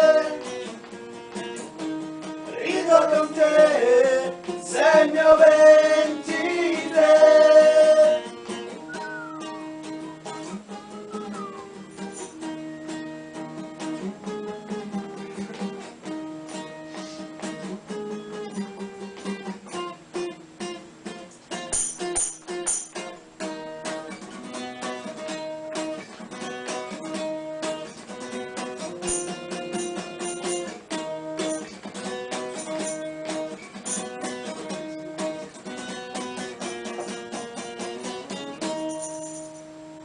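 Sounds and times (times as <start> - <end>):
acoustic guitar playing: 0.0 - 40.0.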